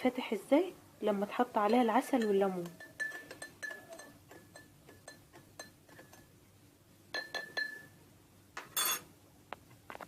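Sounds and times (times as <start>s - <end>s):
spoon clinking in a cup: 1.6s - 6.3s, 7.1s - 7.9s, 8.6s - 9.1s.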